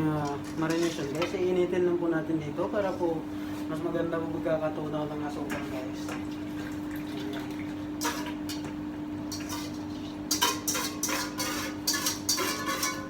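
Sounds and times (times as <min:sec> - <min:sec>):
spoon scraping metal pot: 0:09.3 - 0:13.0.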